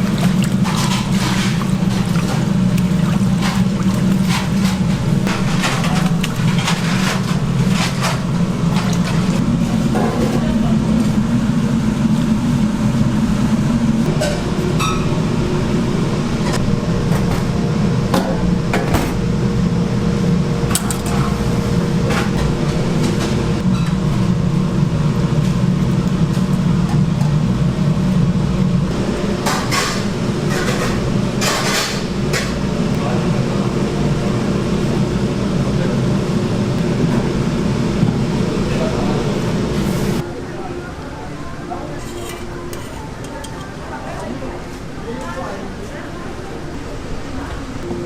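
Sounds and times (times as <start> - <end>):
steady low hum: 0.0 - 48.0
murmur of voices: 38.2 - 48.0
dishes and utensils clinking: 41.9 - 44.3.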